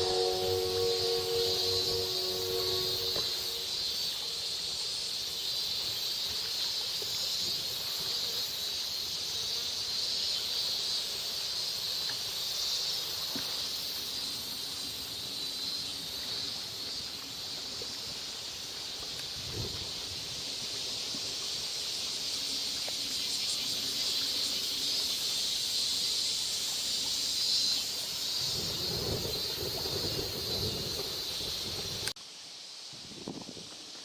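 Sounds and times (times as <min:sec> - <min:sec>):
loudspeaker chime: 0:00.0 - 0:03.7.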